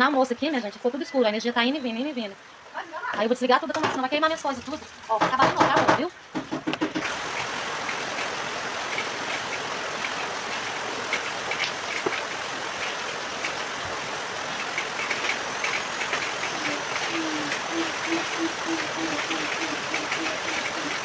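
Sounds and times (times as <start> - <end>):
heavy rain falling: 2.6 - 21.0
small drips: 7.0 - 21.0.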